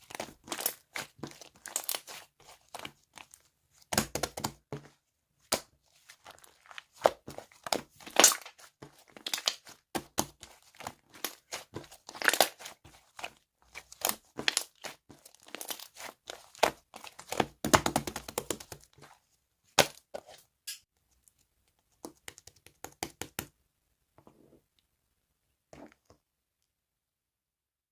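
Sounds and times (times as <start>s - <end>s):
slime being kneaded by hand: 0.0s - 20.4s.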